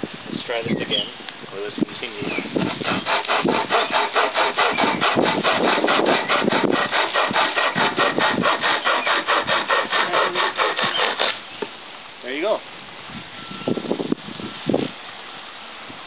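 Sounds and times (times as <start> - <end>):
pocket chainsaw rasping through wood: 2.5 - 11.4.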